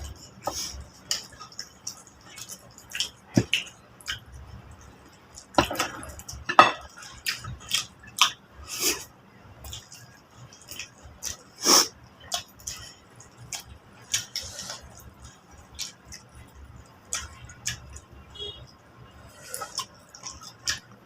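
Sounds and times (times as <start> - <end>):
wet chewing and mouth smacks: 0.0 - 18.2, 19.3 - 21.0
dishes clinking: 5.6 - 7.0.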